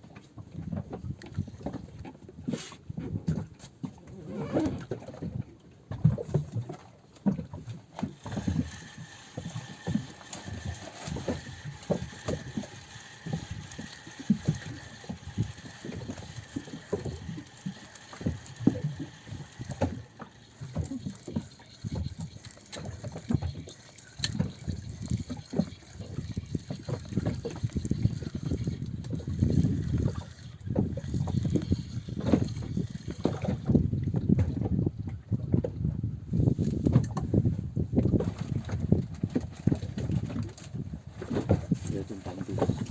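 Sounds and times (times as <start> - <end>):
water lapping against boat hull: 0.0 - 42.9
wind on microphone: 20.7 - 42.9.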